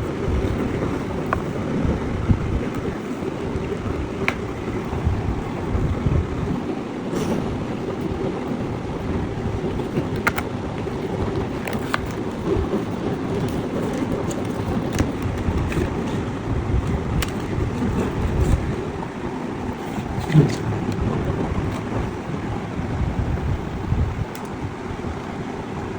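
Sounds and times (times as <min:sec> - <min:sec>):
low rumbling noise: 0:00.0 - 0:25.9.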